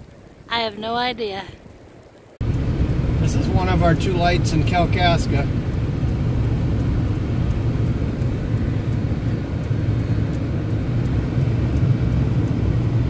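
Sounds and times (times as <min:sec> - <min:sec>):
car driving on snowy road: 0:00.0 - 0:13.0.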